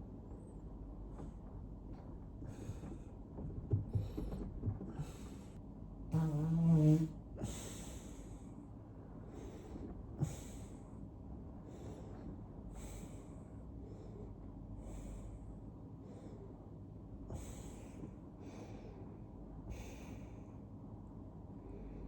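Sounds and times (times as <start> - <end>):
person breathing: 7.4 - 8.6, 11.6 - 16.7, 17.3 - 20.7.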